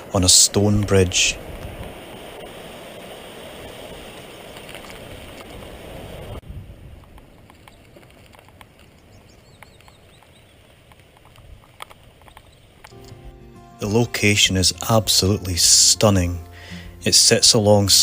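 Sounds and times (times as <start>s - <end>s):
faint bird chirps: 8.8s - 10.7s.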